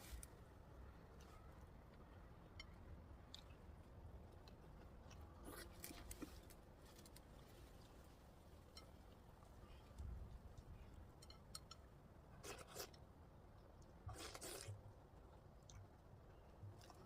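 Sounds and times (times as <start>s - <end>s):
person chewing: 14.1s - 14.7s.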